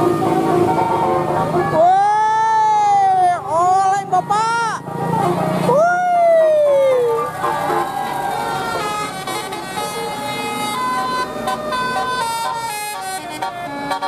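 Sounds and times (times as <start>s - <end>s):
multi-tone bus horn tune: 0.0s - 1.6s, 4.0s - 5.7s, 7.2s - 14.0s.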